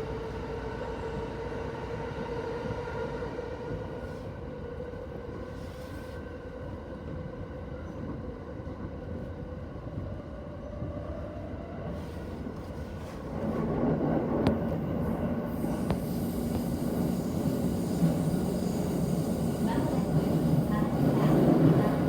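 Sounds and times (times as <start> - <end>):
train wheels rumbling on track: 12.0 - 22.0.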